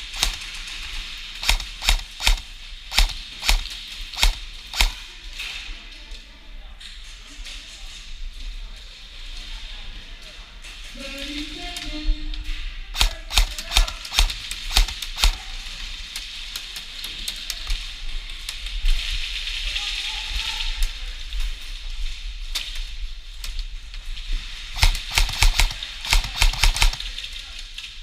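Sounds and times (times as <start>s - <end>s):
airsoft guns firing: 0.0s - 0.7s, 1.4s - 5.1s, 13.0s - 15.6s, 24.8s - 27.2s.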